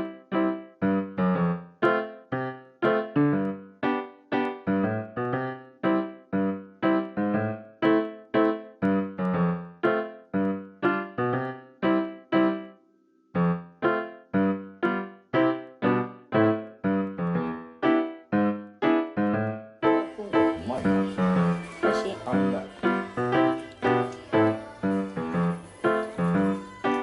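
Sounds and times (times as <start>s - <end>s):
bouncy piano music: 0.0s - 27.0s.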